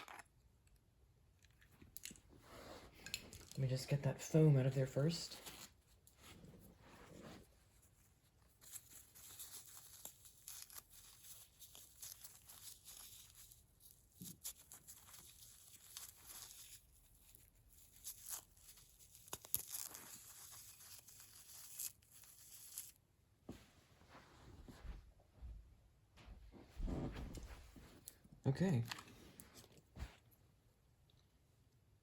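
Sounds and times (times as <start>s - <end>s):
packing foam rustling and tearing: 8.6s - 23.0s.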